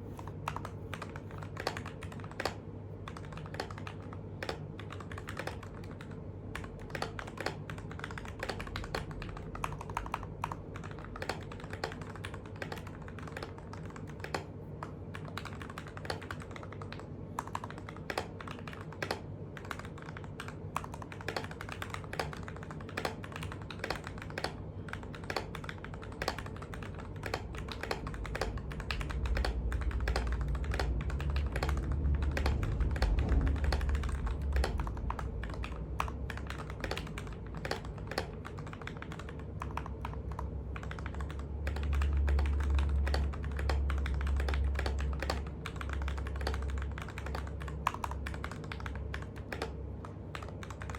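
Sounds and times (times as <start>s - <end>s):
mechanical keyboard typing: 0.0s - 50.9s
low rumble: 28.1s - 36.4s.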